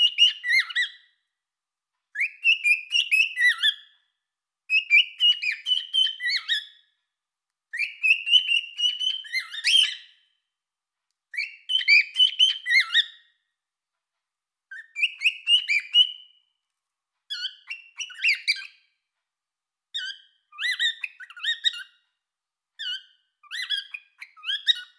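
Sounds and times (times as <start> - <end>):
cockatiel whistling song: 0.0 - 1.2, 2.2 - 4.0, 4.7 - 6.9, 7.7 - 10.3, 11.3 - 13.4, 14.7 - 16.5, 17.3 - 18.9, 19.9 - 22.0, 22.8 - 24.9.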